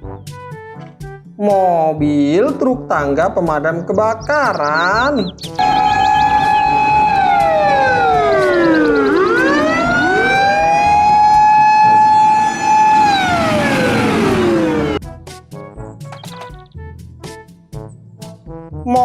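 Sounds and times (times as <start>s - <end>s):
fire truck siren: 5.4s - 15.0s.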